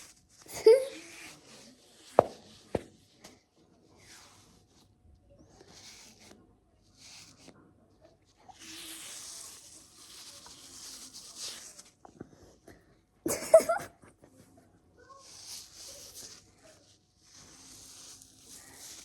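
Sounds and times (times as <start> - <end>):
foam toy rustling and squishing: 0.0 - 3.2, 5.6 - 12.1, 15.0 - 19.0.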